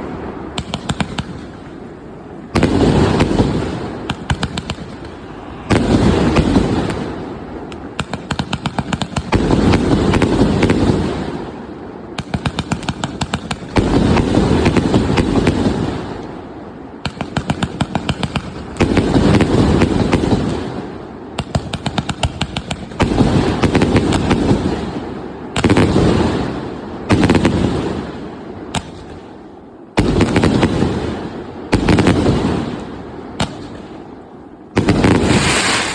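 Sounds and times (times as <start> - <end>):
firework launch shots: 0.0 - 1.7, 2.5 - 16.2, 34.7 - 35.9.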